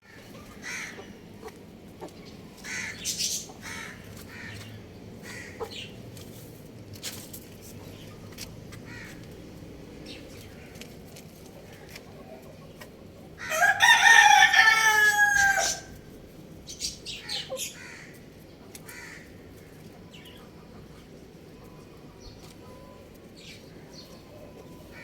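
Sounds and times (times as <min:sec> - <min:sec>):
rooster crowing: 0:13.4 - 0:16.0.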